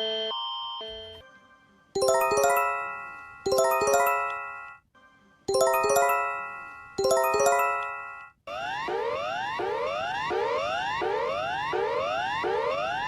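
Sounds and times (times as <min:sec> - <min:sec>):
bell-like chime notes: 0:02.0 - 0:04.8, 0:05.5 - 0:08.3.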